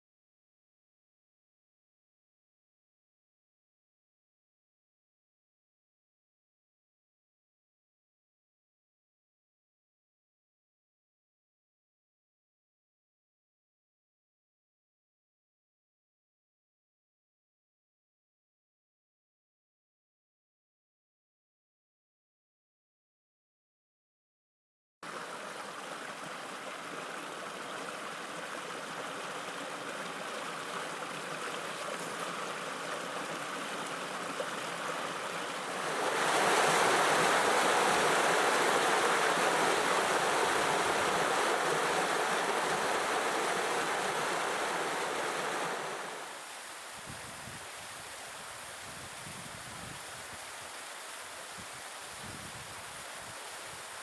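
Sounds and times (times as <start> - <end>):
waterfall rushing: 25.1 - 47.0.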